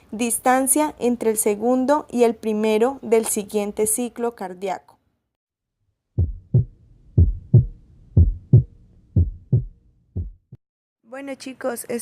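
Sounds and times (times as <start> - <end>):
heartbeat lub-dub: 6.2 - 10.6.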